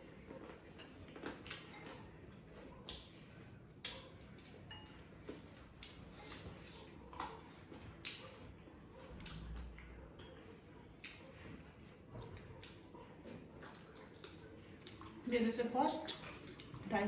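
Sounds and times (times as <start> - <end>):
wet chewing sounds: 0.0 - 17.0.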